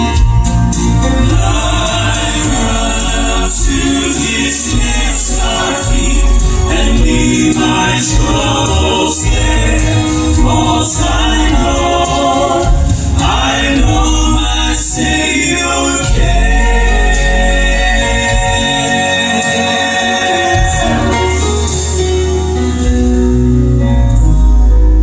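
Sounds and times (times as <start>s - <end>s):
male quartet singing in harmony: 0.0s - 22.6s
band accompaniment with bass: 0.0s - 25.0s.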